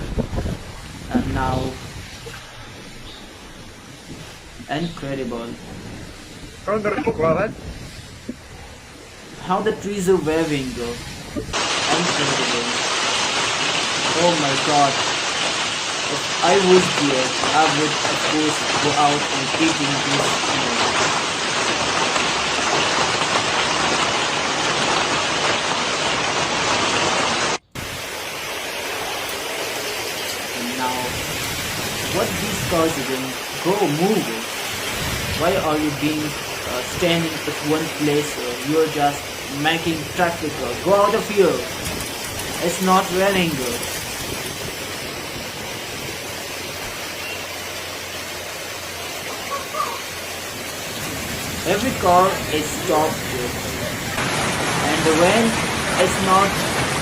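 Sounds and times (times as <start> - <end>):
heavy rain hiss: 0.0 - 57.0
wind: 0.0 - 57.0.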